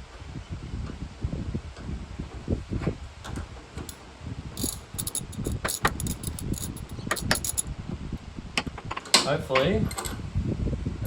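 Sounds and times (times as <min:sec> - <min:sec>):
sharp metallic clicks: 0:04.6 - 0:07.6
spanner knocks and handling noise: 0:04.6 - 0:07.6.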